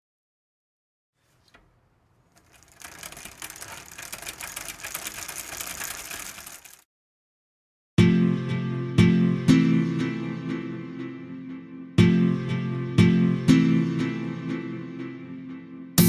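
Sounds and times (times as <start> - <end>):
small machine whirring and rattling: 1.3 - 6.8.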